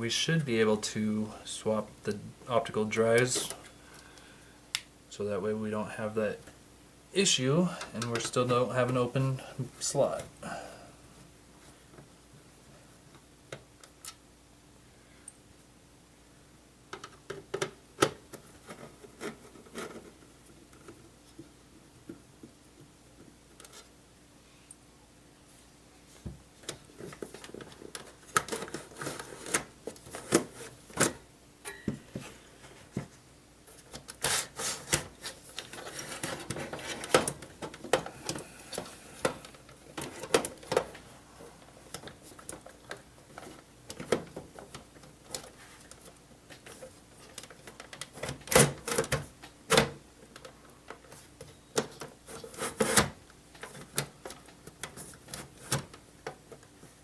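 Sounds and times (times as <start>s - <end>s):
clicks and scraping of computer parts: 17.0s - 21.1s, 33.7s - 41.0s, 41.9s - 56.7s.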